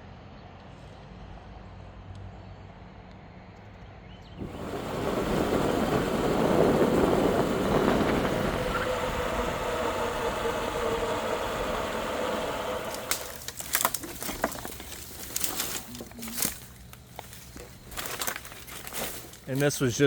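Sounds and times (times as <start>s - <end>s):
vehicle engine humming: 0.6s - 20.0s
sharp clicks and knocks: 12.7s - 18.7s.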